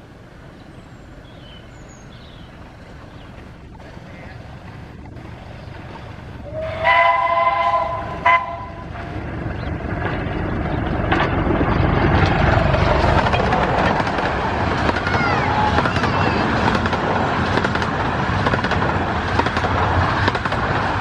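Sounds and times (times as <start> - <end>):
train rumbling at speed: 0.0 - 21.0
steam locomotive whistle: 6.4 - 8.9.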